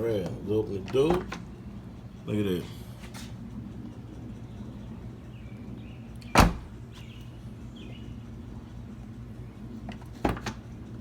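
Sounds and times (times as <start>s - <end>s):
steady low hum: 0.0s - 11.0s
car door shutting: 6.2s - 6.7s.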